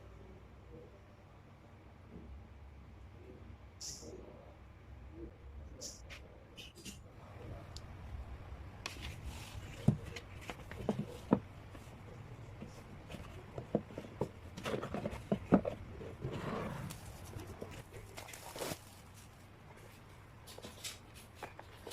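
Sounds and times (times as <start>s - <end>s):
packaging rustling: 16.9s - 21.9s.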